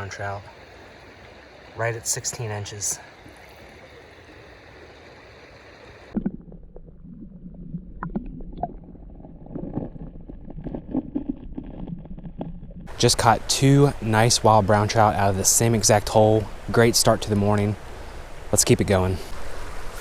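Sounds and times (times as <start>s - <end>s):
creek water running: 0.0s - 20.0s
muffled low gurgling rumble: 5.8s - 20.0s.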